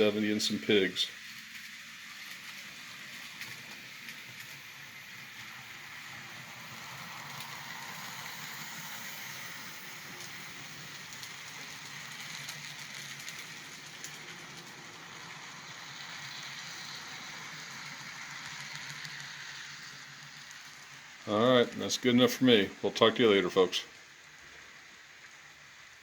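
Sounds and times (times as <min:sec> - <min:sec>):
model train motor whirring: 0:00.0 - 0:22.6
faint clicks over rail joints: 0:01.2 - 0:22.6.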